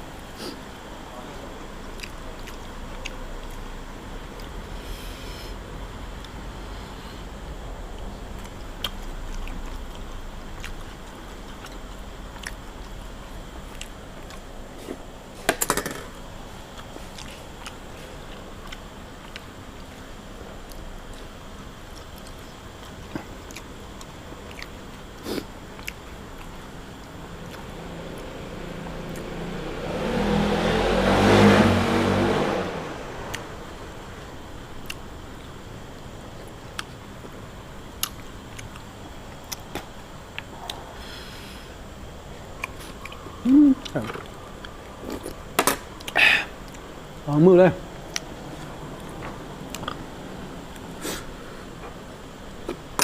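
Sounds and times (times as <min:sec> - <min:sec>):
vehicle passing by: 0:27.5 - 0:34.2.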